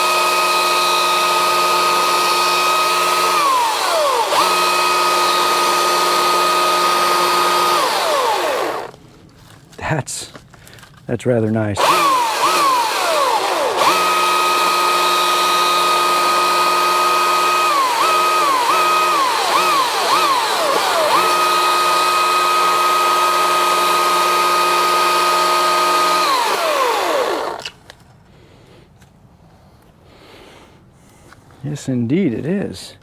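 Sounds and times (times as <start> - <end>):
electric chainsaw cutting wood: 0.0 - 9.0, 11.8 - 27.8.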